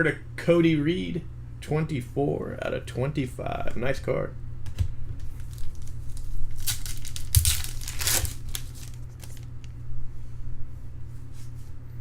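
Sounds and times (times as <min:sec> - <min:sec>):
cards being handled: 0:05.2 - 0:09.6
wrapper tearing and crinkling: 0:05.4 - 0:09.5.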